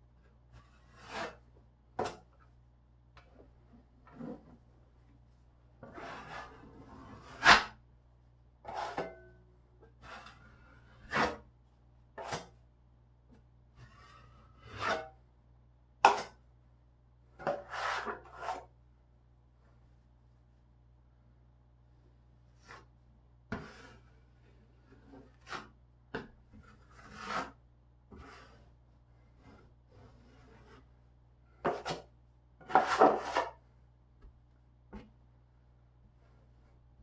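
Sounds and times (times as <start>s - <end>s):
tool scraping drywall: 0.5s - 2.3s, 5.8s - 7.8s, 10.0s - 11.5s, 13.8s - 15.1s, 17.4s - 18.7s, 23.5s - 25.8s, 26.5s - 31.0s, 31.6s - 33.6s.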